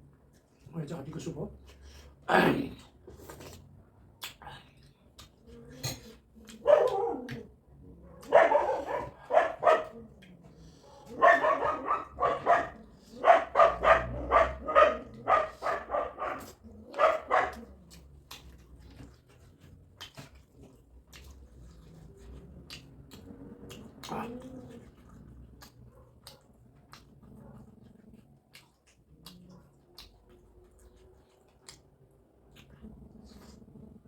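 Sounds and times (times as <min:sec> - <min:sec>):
dog barking: 0:06.5 - 0:07.5, 0:08.1 - 0:10.0, 0:11.0 - 0:17.7.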